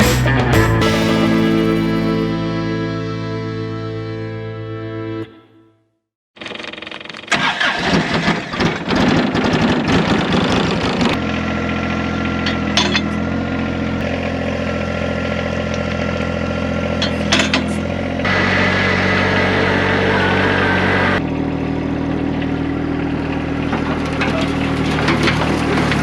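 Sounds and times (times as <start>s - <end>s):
tractor engine cranking: 6.4s - 14.5s, 15.2s - 21.3s, 22.3s - 26.0s
tractor engine idling: 6.4s - 26.0s.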